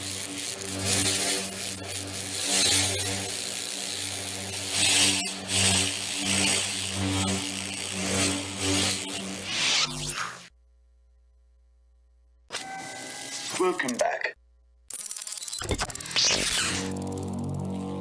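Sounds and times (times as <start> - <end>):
lightsaber hum and swooshes: 2.6 - 10.5.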